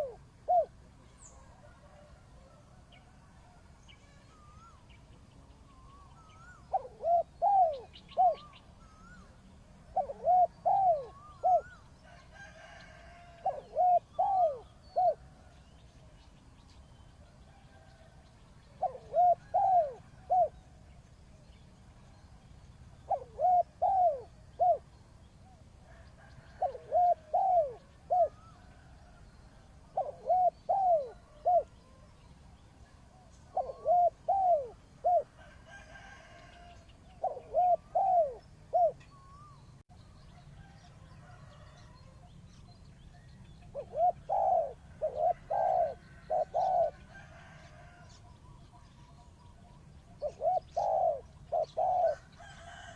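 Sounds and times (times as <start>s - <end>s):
dove cooing: 0.0s - 4.8s, 5.7s - 15.5s, 17.5s - 20.7s, 23.0s - 24.9s, 25.9s - 32.1s, 33.1s - 39.6s, 43.6s - 52.9s.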